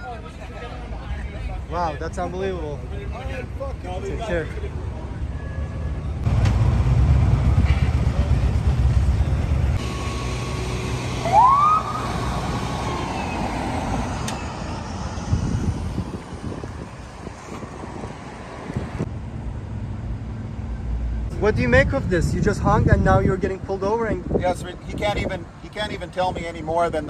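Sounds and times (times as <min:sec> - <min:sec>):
low rumble of traffic: 0:00.0 - 0:27.0
police siren whoop: 0:11.2 - 0:16.2.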